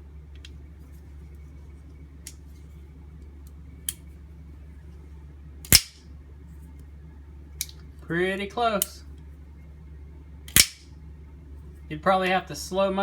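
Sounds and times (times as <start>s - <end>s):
knife blades snapping open: 5.7s - 6.0s, 10.5s - 10.8s.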